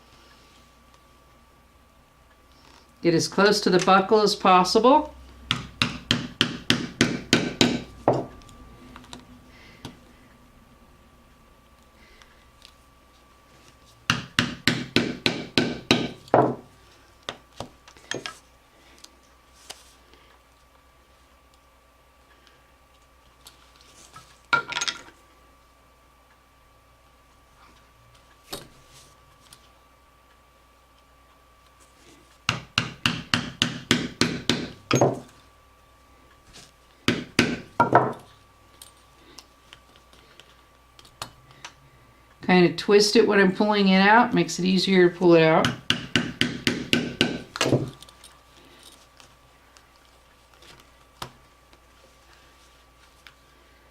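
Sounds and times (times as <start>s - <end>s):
mallet striking leather punch: 5.5s - 8.3s, 14.1s - 16.6s, 32.5s - 35.2s, 37.1s - 38.2s, 45.6s - 47.9s.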